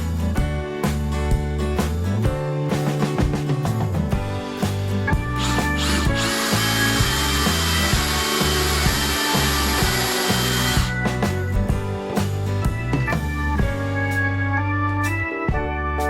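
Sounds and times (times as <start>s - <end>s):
guitar music: 0.0s - 14.6s
power tool whining on wood: 5.4s - 11.0s.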